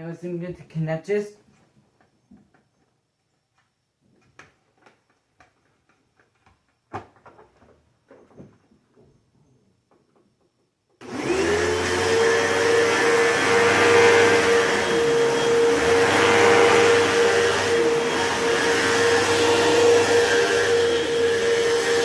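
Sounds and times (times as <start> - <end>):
upright vacuum cleaner running: 11.0 - 22.0.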